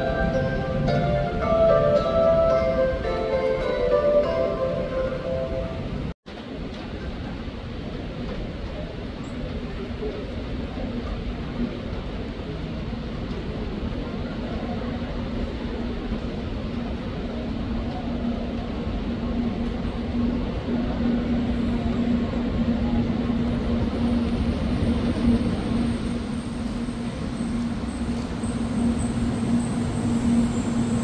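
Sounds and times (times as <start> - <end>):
train rumbling: 0.0 - 31.0
faint high whine: 19.3 - 31.0.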